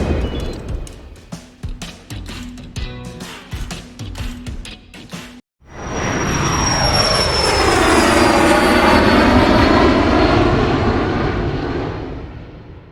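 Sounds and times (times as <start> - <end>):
high whine falling in pitch: 5.7 - 11.4
aircraft roar flying past: 5.7 - 12.9.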